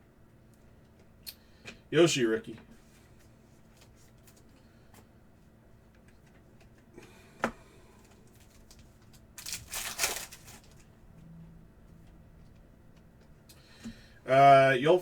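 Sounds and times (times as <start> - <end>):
wrapper and cards crinkling: 8.4 - 10.9.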